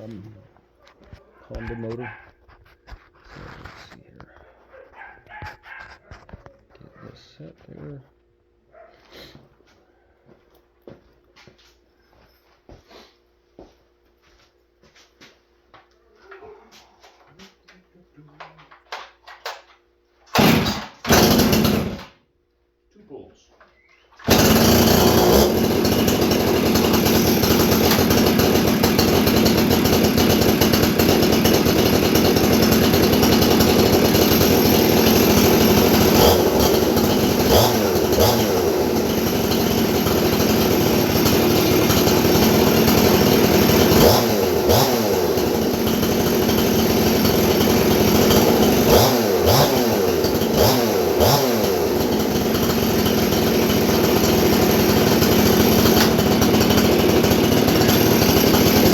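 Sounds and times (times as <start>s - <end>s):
chainsaw revving at fast idle: 20.3s - 22.2s, 24.2s - 58.9s.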